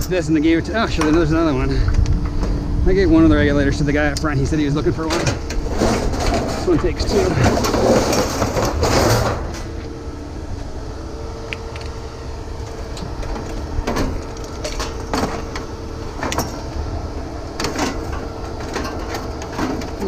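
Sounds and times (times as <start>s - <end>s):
steady low hum: 0.0s - 20.0s
scrap metal knocks and clanks: 5.0s - 9.7s, 17.6s - 20.0s.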